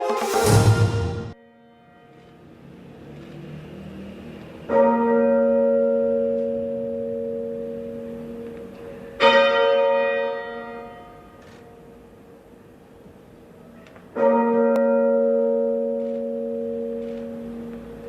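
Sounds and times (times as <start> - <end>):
church bell tolling: 0.0 - 2.9, 4.6 - 12.2, 14.1 - 18.0.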